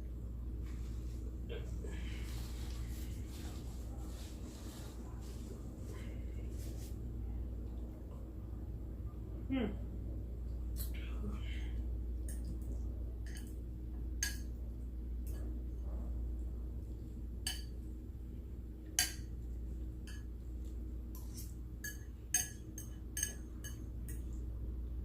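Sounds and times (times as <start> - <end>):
steady low hum: 0.0 - 25.0
cutlery clinking on a plate: 13.3 - 13.6, 14.2 - 14.5, 17.5 - 17.8, 19.0 - 19.4, 20.0 - 20.4, 21.2 - 24.3.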